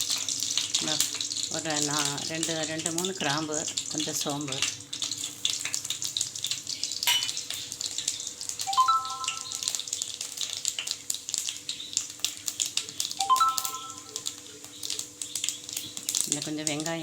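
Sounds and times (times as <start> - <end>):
spices sizzling in hot oil: 0.0 - 17.0
rising three-note chime: 8.7 - 9.8, 13.2 - 14.2.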